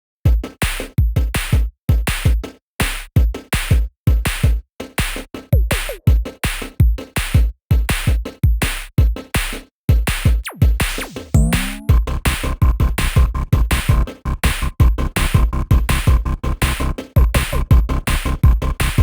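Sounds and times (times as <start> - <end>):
drum-machine beat with heavy bass: 0.3 - 19.0
electronic cumbia music: 10.4 - 14.6.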